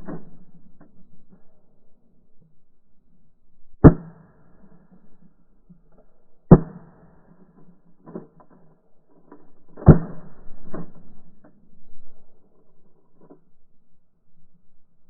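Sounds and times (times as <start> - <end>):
quieter gunshots: 3.7 - 5.2, 6.4 - 8.4, 9.5 - 11.6
shotgun blasts: 9.8 - 11.2.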